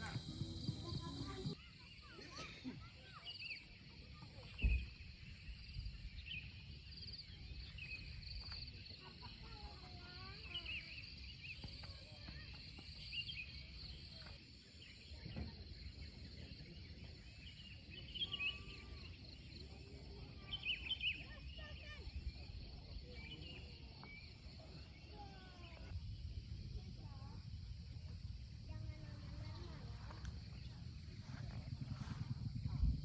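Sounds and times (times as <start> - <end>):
thump: 4.6 - 5.0
low rumble: 25.9 - 33.0.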